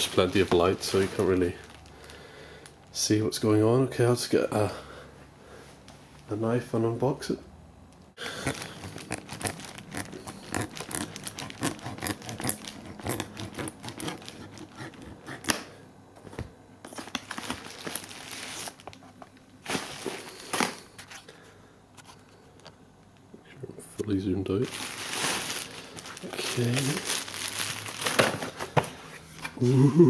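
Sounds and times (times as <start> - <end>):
plastic wrapping crinkling and ripping: 0.0 - 3.0, 8.2 - 15.0, 16.9 - 21.2, 24.6 - 29.8
knife cutting plastic wrapping: 8.2 - 15.7.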